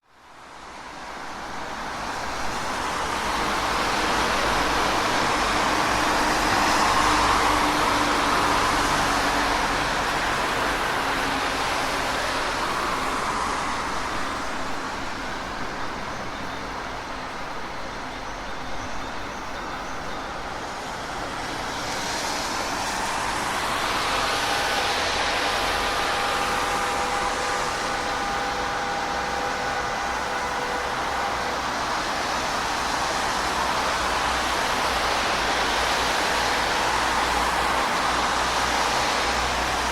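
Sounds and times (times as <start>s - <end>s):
passing road traffic: 0.3s - 39.9s
steady pitched whine: 22.5s - 33.0s.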